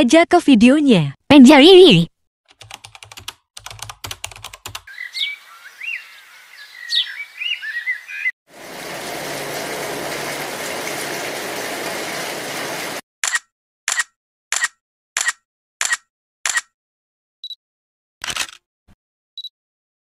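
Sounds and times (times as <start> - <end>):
chirping: 4.9 - 8.3
sharp click: 13.2 - 16.7.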